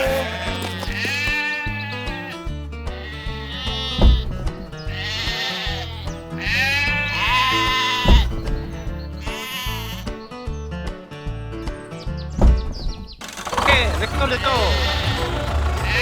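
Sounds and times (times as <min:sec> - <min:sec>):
wavering bleat-like calls: 0:00.0 - 0:08.5, 0:09.2 - 0:10.2.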